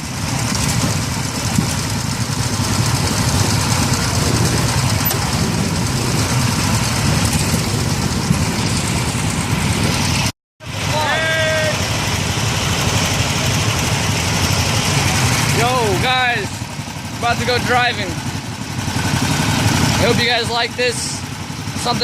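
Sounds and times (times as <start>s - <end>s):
vehicle engine rumbling: 0.0s - 22.0s.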